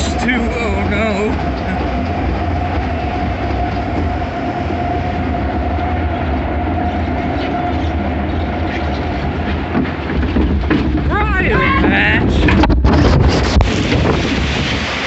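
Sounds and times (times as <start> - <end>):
conveyor mechanical rumble and whine: 0.0 - 15.0
faint clatter: 7.3 - 14.6.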